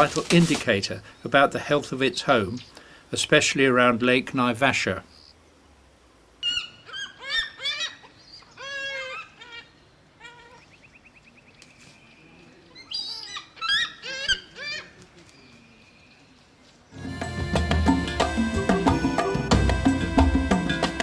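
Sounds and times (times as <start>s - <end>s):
eagle calling: 6.4s - 15.6s, 17.0s - 21.0s.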